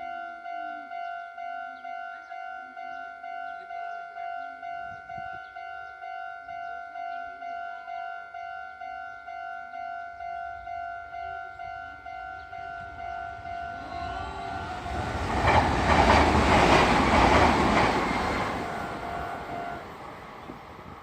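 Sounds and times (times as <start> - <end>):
level-crossing bell clanging: 0.0 - 20.4
train passing: 9.8 - 21.0
wheel clatter over rail joints: 14.7 - 19.8.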